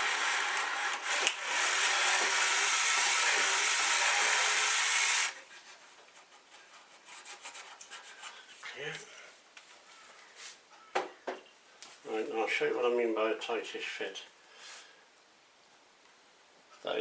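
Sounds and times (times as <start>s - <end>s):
electric drill boring: 0.0s - 5.4s.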